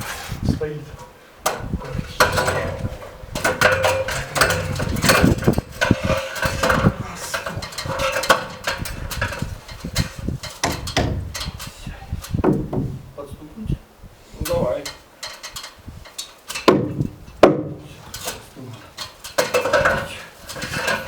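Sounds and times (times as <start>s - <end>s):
wooden beams knocking and clattering: 1.4s - 13.1s, 14.8s - 21.0s.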